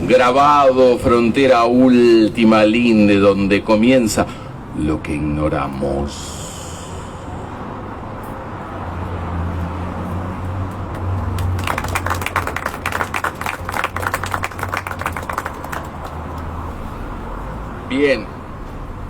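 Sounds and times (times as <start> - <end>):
small audience clapping: 10.7 - 16.7.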